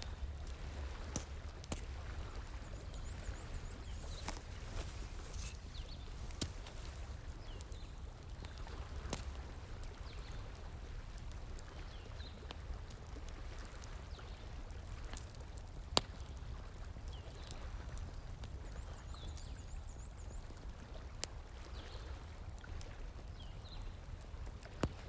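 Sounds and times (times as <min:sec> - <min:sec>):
wood fire crackling and popping: 0:00.4 - 0:09.8.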